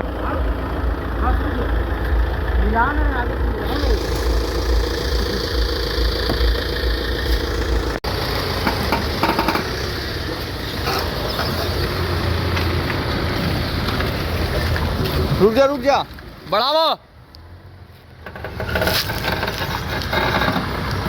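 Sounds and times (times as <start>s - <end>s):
car engine running: 0.0s - 16.0s.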